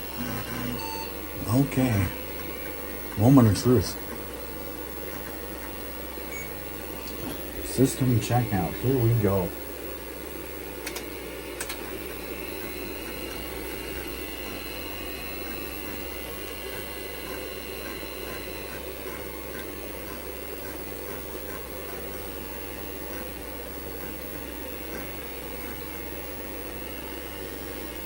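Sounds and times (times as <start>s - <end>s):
computer fans and hard drives whirring: 0.0s - 28.0s
sharp clicks: 10.8s - 11.8s.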